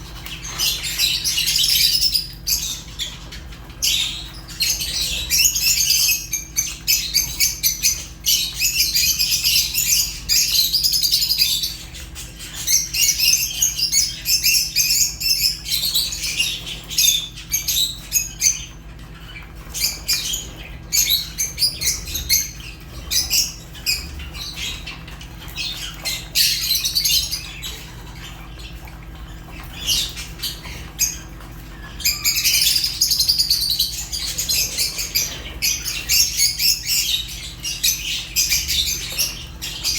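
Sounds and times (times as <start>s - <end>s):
lovebirds chirping: 0.0s - 39.9s.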